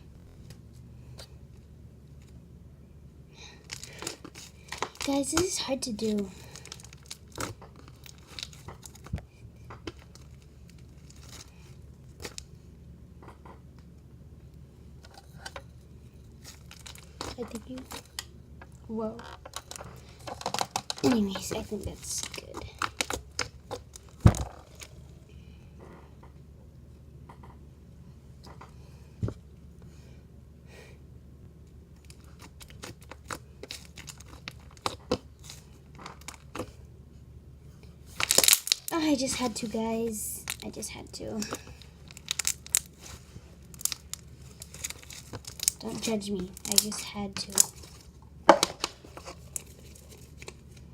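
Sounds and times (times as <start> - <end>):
slime crackling and popping: 3.4 - 12.5, 19.4 - 25.1, 32.0 - 36.7, 38.1 - 50.9.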